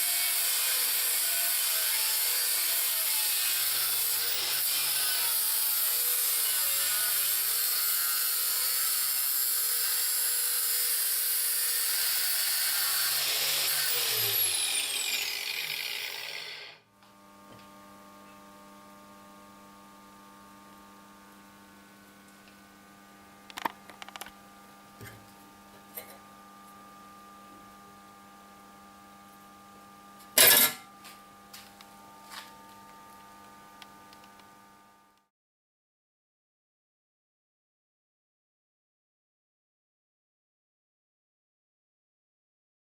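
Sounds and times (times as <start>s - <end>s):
angle grinder running: 0.0s - 16.8s.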